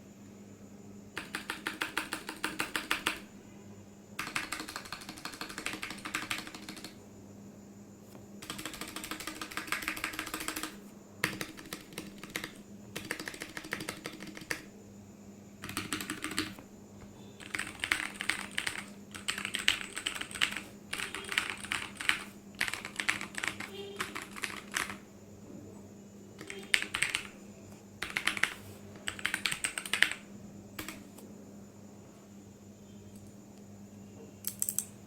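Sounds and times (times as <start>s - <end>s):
mechanical keyboard typing: 1.2s - 3.2s, 4.2s - 7.0s, 8.4s - 14.7s, 15.6s - 16.6s, 17.4s - 25.0s, 26.4s - 27.3s, 28.0s - 30.2s, 30.8s - 31.0s.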